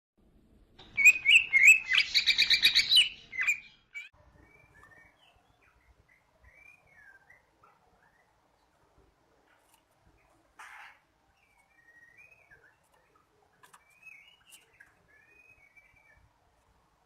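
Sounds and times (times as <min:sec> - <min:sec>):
bird chirping and trilling: 0:00.8 - 0:08.3, 0:10.8 - 0:16.3
faint soft chirps: 0:00.8 - 0:16.8.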